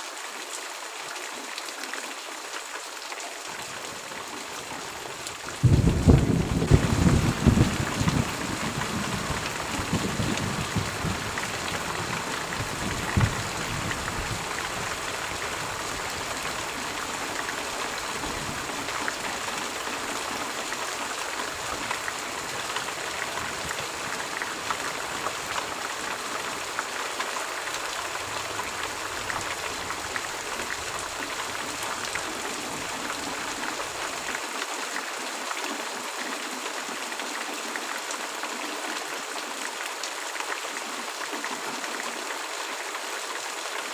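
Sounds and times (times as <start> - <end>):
steady rain: 0.0 - 43.9
thunder rumbling: 5.6 - 15.1.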